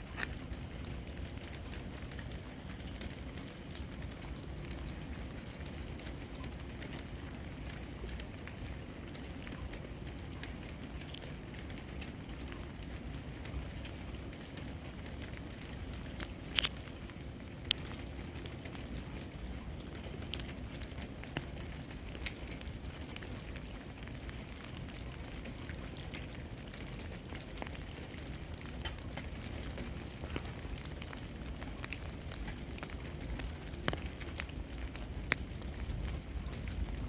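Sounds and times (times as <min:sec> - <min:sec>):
steady low rumble: 0:00.0 - 0:37.0
ice dripping and dropping: 0:15.5 - 0:18.7.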